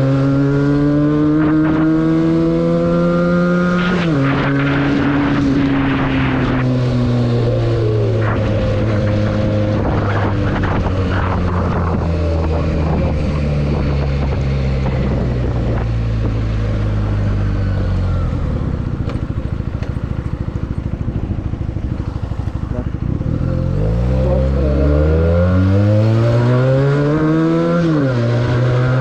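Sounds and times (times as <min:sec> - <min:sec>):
motorcycle engine idling: 0:17.7 - 0:23.2.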